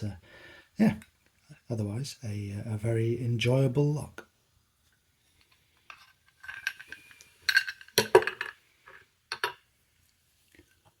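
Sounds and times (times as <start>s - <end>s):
small metal parts clinking: 5.9s - 9.6s.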